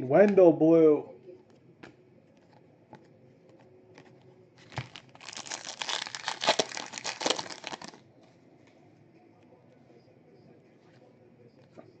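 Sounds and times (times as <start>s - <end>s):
plastic wrapper crinkling: 4.6s - 8.0s.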